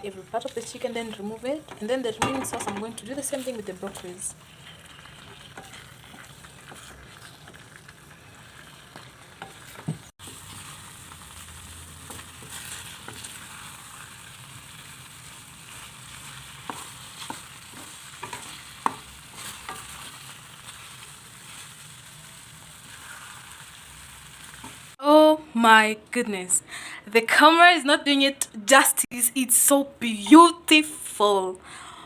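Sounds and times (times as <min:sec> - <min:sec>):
chicken sizzling in sauce: 0:03.1 - 0:25.0.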